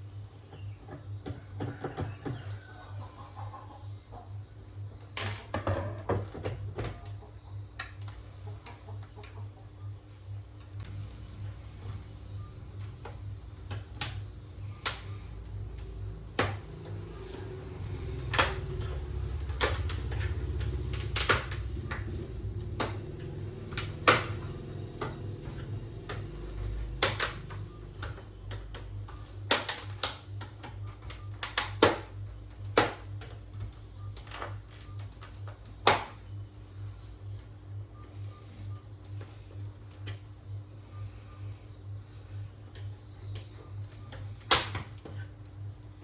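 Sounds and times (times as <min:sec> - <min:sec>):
tools clicking on computer casing: 0:18.2 - 0:36.2.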